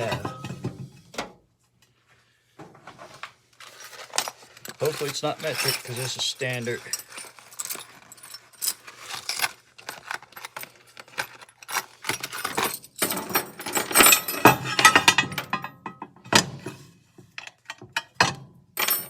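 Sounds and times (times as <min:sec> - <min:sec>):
metal keys clinking: 0:03.6 - 0:15.0.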